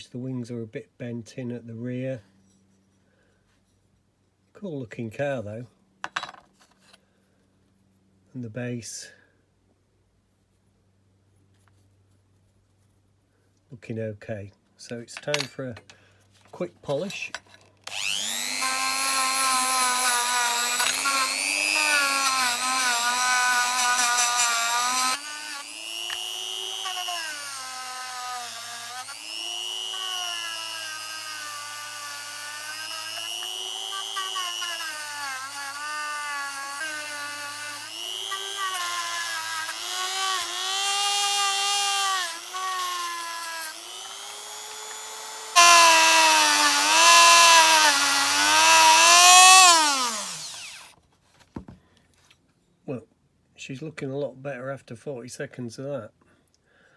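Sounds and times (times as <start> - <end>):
rotary tool whining: 17.0 - 50.9.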